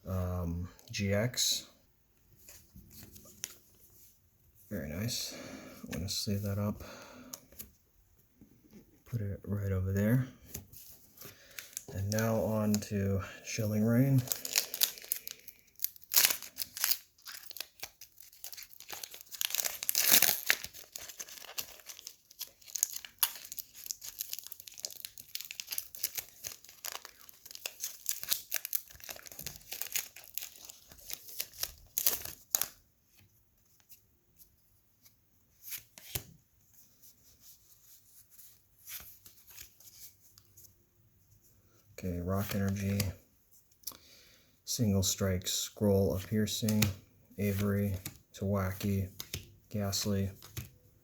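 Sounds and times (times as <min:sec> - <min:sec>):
foil wrapper tearing and crinkling: 0:14.2 - 0:32.8.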